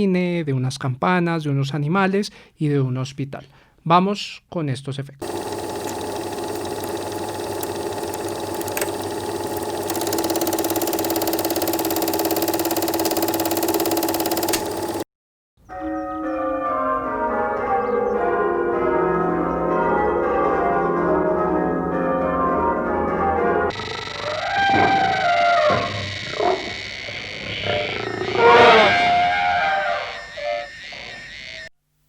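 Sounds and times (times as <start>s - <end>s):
film projector clattering: 5.2s - 15.0s, 23.7s - 28.5s
church bells ringing: 15.7s - 23.7s.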